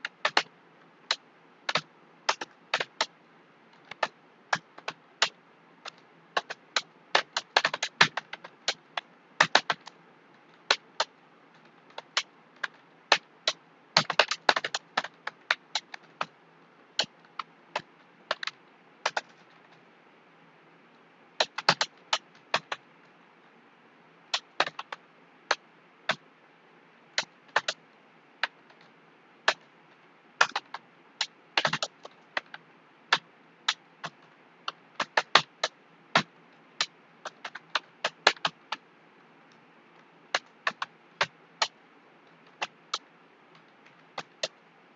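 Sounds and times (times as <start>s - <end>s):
computer keyboard typing: 5.8s - 8.8s, 9.4s - 9.9s.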